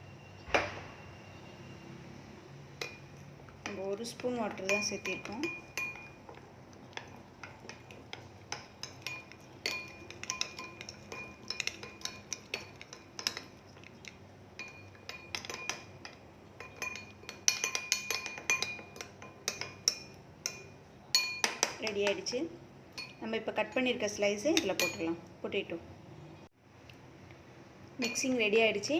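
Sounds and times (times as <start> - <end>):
spoon clinking against bowl: 2.8 - 14.0, 14.6 - 22.2, 22.9 - 25.1, 28.0 - 28.4.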